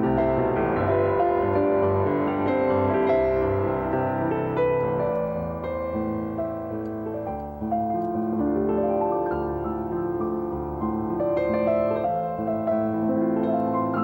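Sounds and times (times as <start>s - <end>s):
slow piano music: 0.0s - 14.0s.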